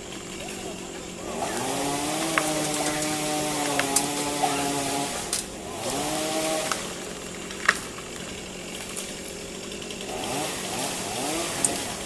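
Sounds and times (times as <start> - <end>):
chainsaw engine running: 0.0 - 12.0.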